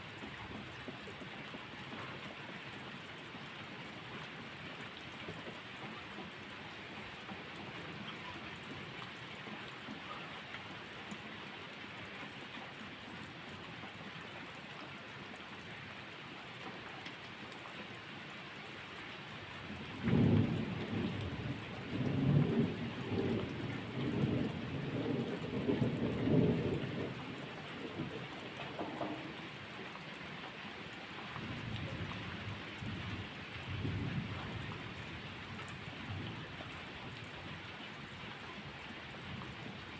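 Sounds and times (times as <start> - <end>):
rain hiss: 19.3 - 39.9
thunder rumbling: 20.0 - 29.4.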